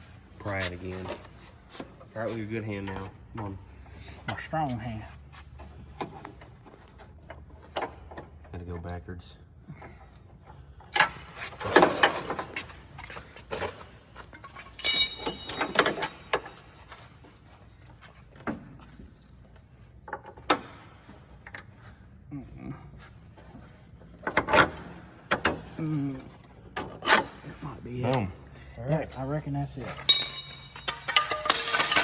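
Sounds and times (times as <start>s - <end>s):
hand tools clanking on steel: 11.0s - 16.7s, 26.8s - 32.0s
bright metallic ring: 14.8s - 16.4s, 30.1s - 32.0s.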